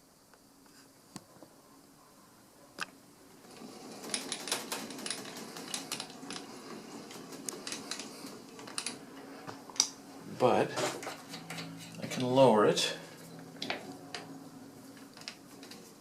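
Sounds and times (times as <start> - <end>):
metal tooling clicking and clinking: 4.0 - 9.0.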